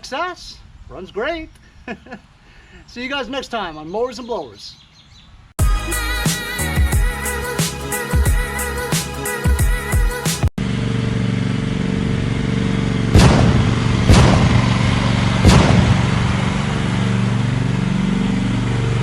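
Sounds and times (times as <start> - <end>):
engine running: 10.2 - 19.0
loud sharp bangs: 13.1 - 17.4.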